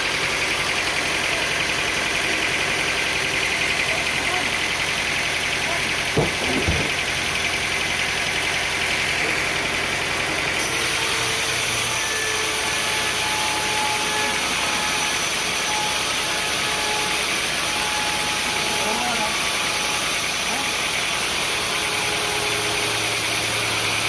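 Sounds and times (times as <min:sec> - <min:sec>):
engine idling: 0:00.0 - 0:24.0
short low thump: 0:06.2 - 0:07.0.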